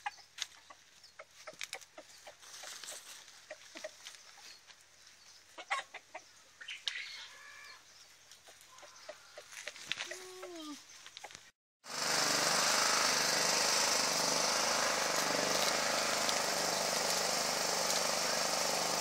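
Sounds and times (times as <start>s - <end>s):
chickens clucking: 0.0s - 4.6s, 5.5s - 7.2s.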